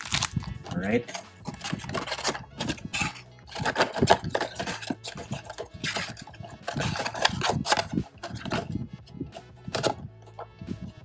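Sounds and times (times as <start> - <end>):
foil card packs crinkling: 0.0 - 8.7.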